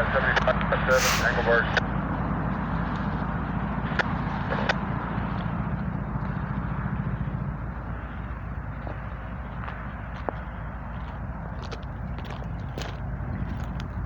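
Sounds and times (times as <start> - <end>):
diesel locomotives idling: 0.0 - 14.0.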